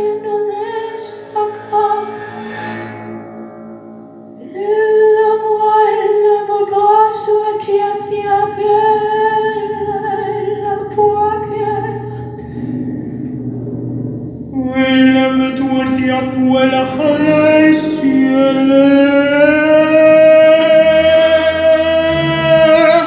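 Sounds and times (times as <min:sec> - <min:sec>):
woman singing a long note: 0:04.4 - 0:12.6, 0:14.6 - 0:23.0
instrumental accompaniment: 0:07.6 - 0:23.0.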